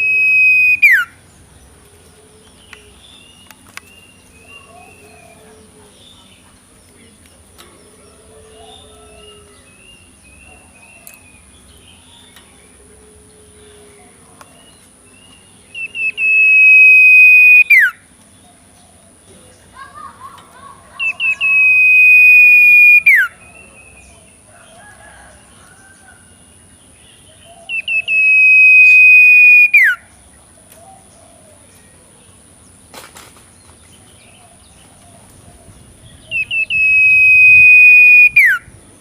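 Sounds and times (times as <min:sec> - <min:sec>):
young bird whistled call: 0:00.0 - 0:01.2, 0:15.7 - 0:18.0, 0:21.0 - 0:23.4, 0:27.7 - 0:30.0, 0:36.3 - 0:38.7.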